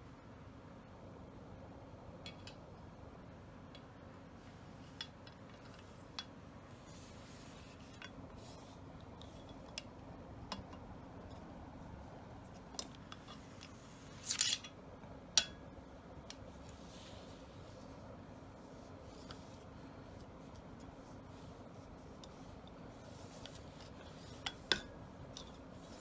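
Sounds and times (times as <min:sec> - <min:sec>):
metal gun parts clicking: 0:12.8 - 0:14.7.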